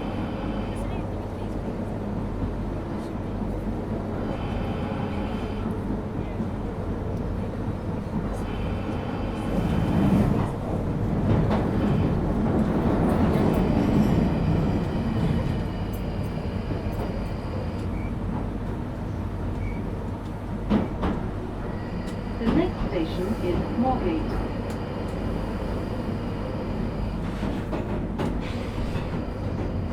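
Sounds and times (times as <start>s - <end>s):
train rumbling through a tunnel: 0.0s - 29.9s.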